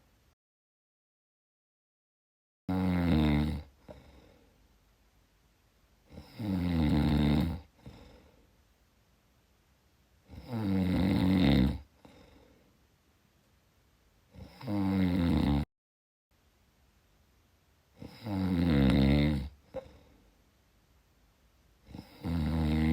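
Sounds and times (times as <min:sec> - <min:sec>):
person snoring: 0:02.7 - 0:04.4, 0:06.1 - 0:08.4, 0:10.3 - 0:12.6, 0:14.3 - 0:15.7, 0:18.0 - 0:20.2, 0:21.9 - 0:22.9
faint breath: 0:03.8 - 0:04.8, 0:07.7 - 0:08.6, 0:11.9 - 0:12.9, 0:19.6 - 0:20.5.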